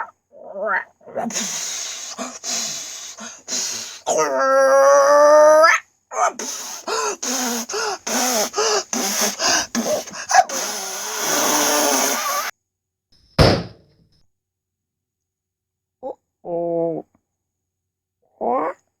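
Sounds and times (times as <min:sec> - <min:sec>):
long breath hiss: 0:01.2 - 0:04.2, 0:06.3 - 0:12.5
person making strained puffs: 0:01.2 - 0:04.4, 0:06.3 - 0:12.5.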